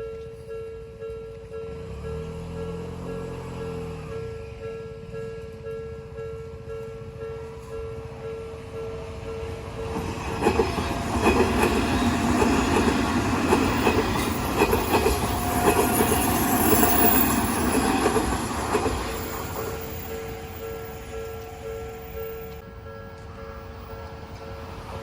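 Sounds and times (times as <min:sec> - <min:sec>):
level crossing warning bell: 0:00.0 - 0:25.0
train wheels clacking over rail joints: 0:09.8 - 0:20.4.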